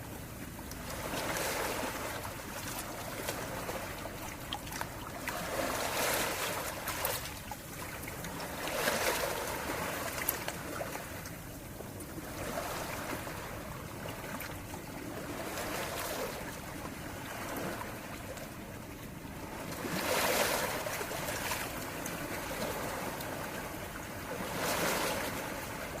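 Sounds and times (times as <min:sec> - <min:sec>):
sea waves washing onto shore: 0:00.0 - 0:26.0.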